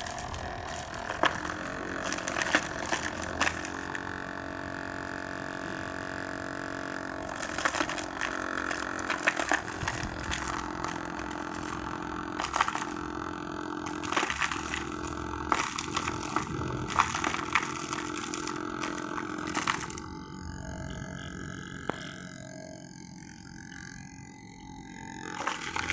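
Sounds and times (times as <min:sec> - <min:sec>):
stones knocking on blades: 0:00.0 - 0:04.0, 0:07.3 - 0:13.1, 0:13.8 - 0:20.0
rotavator running: 0:00.0 - 0:25.9.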